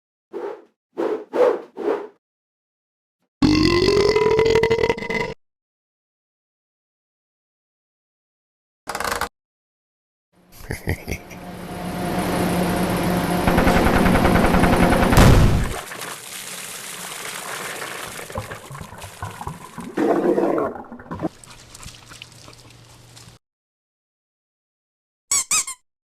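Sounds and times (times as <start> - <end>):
steady low hum: 10.6 - 15.1.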